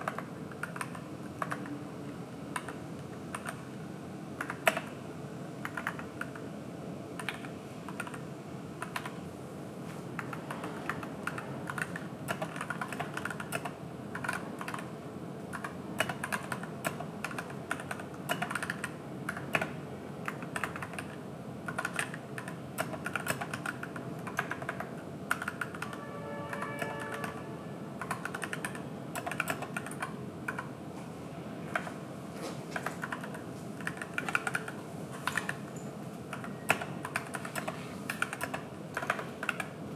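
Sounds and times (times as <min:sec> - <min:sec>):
mechanical keyboard typing: 0:00.0 - 0:01.8, 0:02.5 - 0:03.6, 0:04.4 - 0:04.9, 0:05.6 - 0:06.5, 0:07.2 - 0:08.2, 0:08.8 - 0:09.2, 0:10.2 - 0:14.9, 0:15.5 - 0:27.4, 0:28.0 - 0:30.7, 0:32.8 - 0:35.7, 0:36.3 - 0:39.8.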